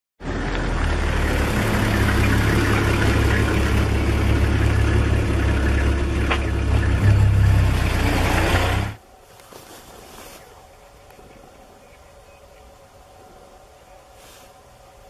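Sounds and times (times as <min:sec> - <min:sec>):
vehicle engine idling: 0:00.2 - 0:09.0.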